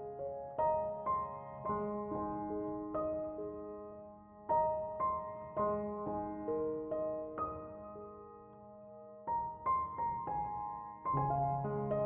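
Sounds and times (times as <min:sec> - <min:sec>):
slow soft solo piano: 0:00.0 - 0:12.0.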